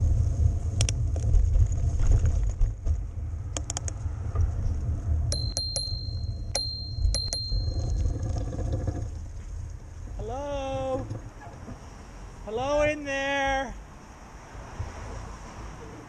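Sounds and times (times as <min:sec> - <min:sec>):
traffic rumble: 0:00.0 - 0:16.0
wind: 0:00.0 - 0:16.0
bicycle bell dinging: 0:05.3 - 0:08.3.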